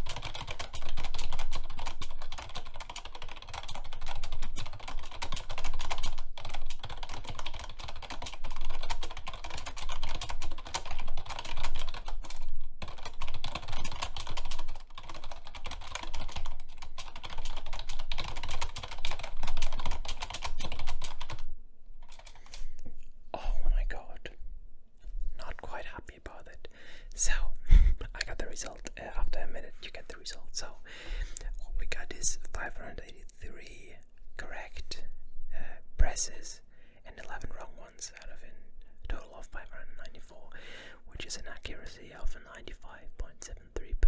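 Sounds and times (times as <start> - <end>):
keyboard typing: 0.0 - 23.1.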